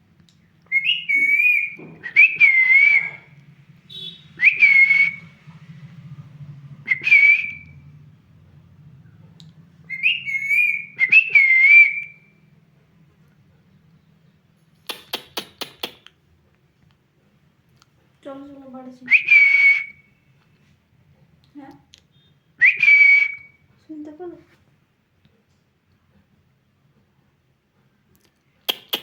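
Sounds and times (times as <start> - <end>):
parrot whistling: 0.7 - 3.3, 3.9 - 5.3, 9.9 - 12.3, 19.1 - 20.0, 22.6 - 23.6.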